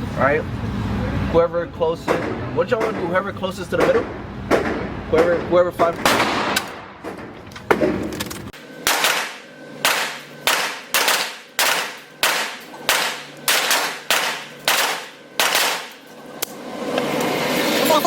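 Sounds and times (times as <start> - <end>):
gunshots with echo: 3.8 - 7.2, 8.8 - 16.0.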